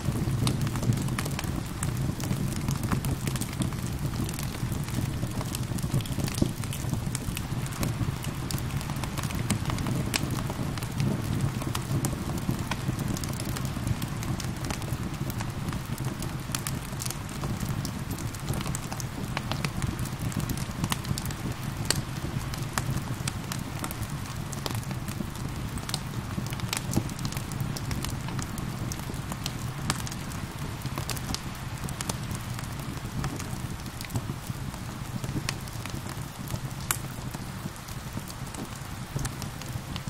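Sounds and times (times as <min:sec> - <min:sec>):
gentle rain: 0:00.0 - 0:40.0
wood fire crackling and popping: 0:00.0 - 0:40.0.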